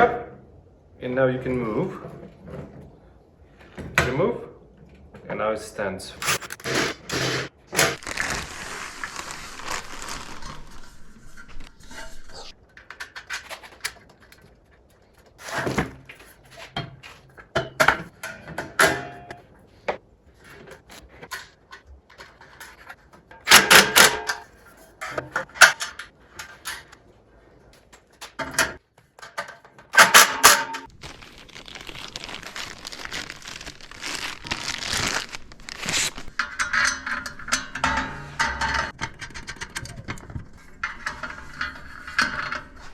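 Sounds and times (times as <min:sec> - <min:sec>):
rustling: 0:06.2 - 0:17.4, 0:30.8 - 0:38.5
metal parts knocking and clattering: 0:20.4 - 0:27.0, 0:27.8 - 0:30.9, 0:36.1 - 0:42.9.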